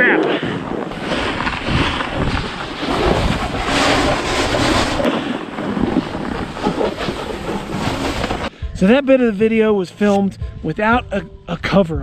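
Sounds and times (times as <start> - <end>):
wind buffeting microphone: 0.4 - 8.8.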